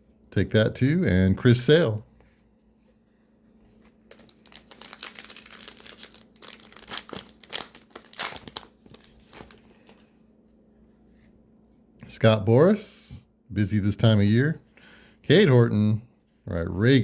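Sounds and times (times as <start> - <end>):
wrapper tearing and crinkling: 4.1 - 10.0.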